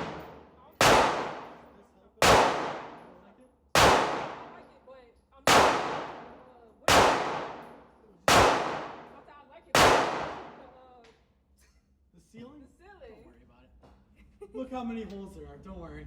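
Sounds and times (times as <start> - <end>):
gunshots with long echo: 0.0 - 3.2, 3.8 - 4.7, 5.5 - 9.2, 9.8 - 10.7.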